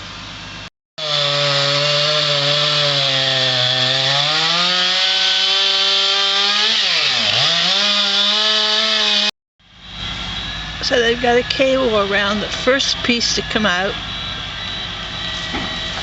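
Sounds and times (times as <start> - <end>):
chainsaw cutting wood: 1.0 - 9.3.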